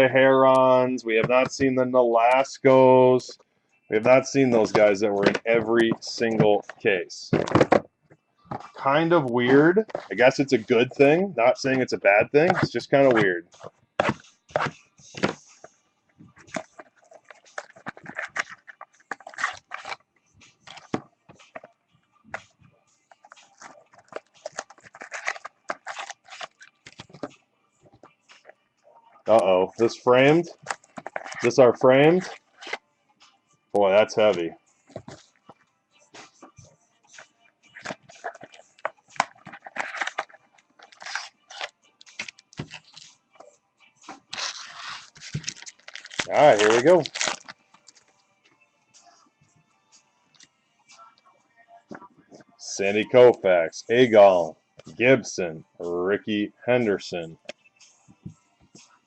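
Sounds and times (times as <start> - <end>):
card packaging crinkling: 23.6 - 27.3, 39.2 - 43.0, 44.3 - 48.0
plastic rustling: 44.3 - 48.0.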